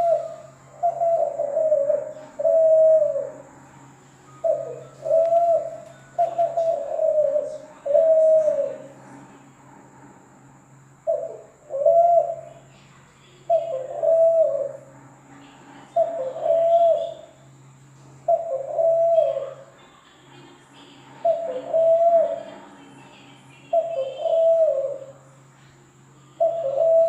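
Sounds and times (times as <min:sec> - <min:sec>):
dove cooing: 0:00.0 - 0:03.6, 0:04.3 - 0:09.1, 0:11.0 - 0:12.6, 0:13.4 - 0:14.9, 0:15.5 - 0:17.4, 0:18.2 - 0:19.9, 0:20.6 - 0:25.3, 0:26.3 - 0:27.0
faint electrical hum: 0:00.0 - 0:27.0.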